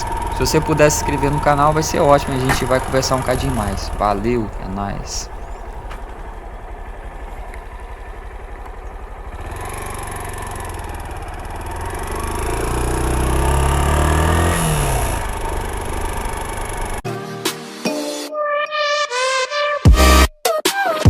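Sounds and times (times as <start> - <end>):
metallic engine clatter: 0.0 - 17.0
motorcycle engine idling and revving: 0.0 - 17.0
music: 17.0 - 21.0.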